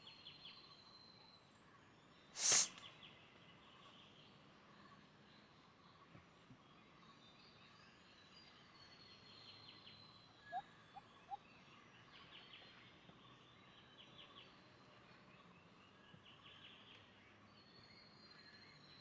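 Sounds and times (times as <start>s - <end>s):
thin high bird whistle: 2.4s - 2.9s
short loud bird chirps: 2.4s - 3.0s.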